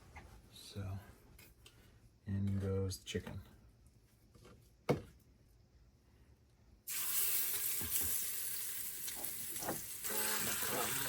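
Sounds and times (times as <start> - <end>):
chicken sizzling in hot oil: 6.9 - 11.0.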